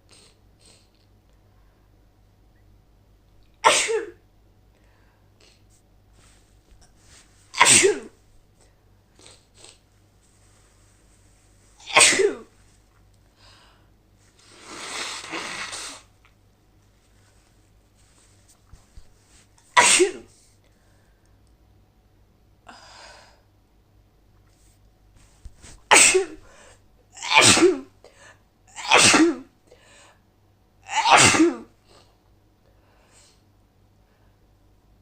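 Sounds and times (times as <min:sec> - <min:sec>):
quiet breathing: 0:00.0 - 0:02.1, 0:04.7 - 0:07.5, 0:12.5 - 0:14.9, 0:20.3 - 0:21.5, 0:26.4 - 0:26.9, 0:28.0 - 0:28.5, 0:29.7 - 0:30.3, 0:31.8 - 0:34.7
woman sneezing: 0:07.6 - 0:08.2, 0:11.8 - 0:12.5, 0:19.8 - 0:20.3, 0:25.9 - 0:26.5, 0:27.2 - 0:27.9, 0:28.8 - 0:29.5, 0:30.9 - 0:31.7.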